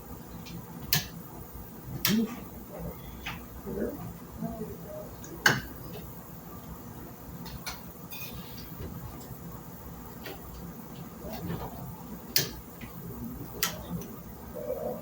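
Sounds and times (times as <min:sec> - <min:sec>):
faint steady background noise: 0:00.0 - 0:15.0.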